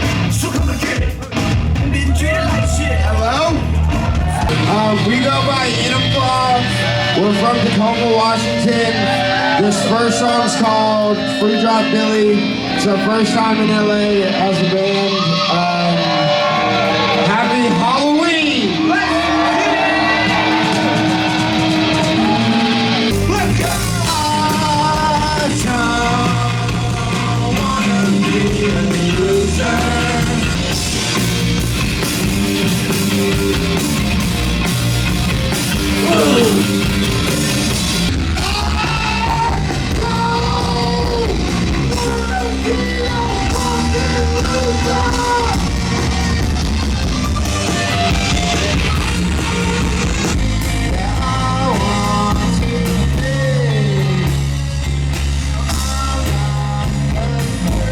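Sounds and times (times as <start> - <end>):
bass guitar: 0.0 - 57.9
drums: 0.0 - 57.9
guitars: 0.0 - 57.9
person singing: 36.0 - 36.8.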